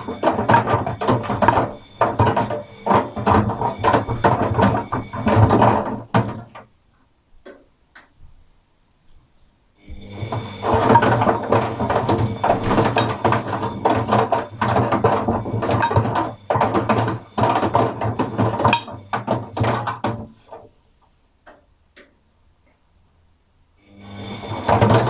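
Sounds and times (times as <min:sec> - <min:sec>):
items clattering in washing drum: 0:00.0 - 0:06.8, 0:09.9 - 0:22.2, 0:24.1 - 0:25.0
washing machine motor humming: 0:00.0 - 0:06.8, 0:09.7 - 0:20.5, 0:23.8 - 0:25.0.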